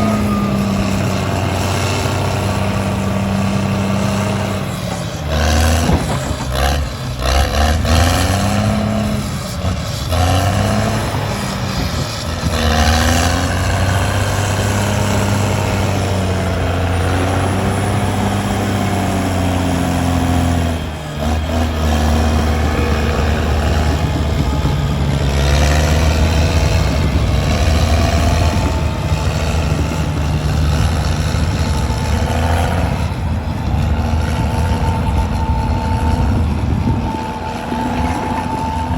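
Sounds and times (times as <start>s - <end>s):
heavy diesel engine revving: 0.0s - 38.9s.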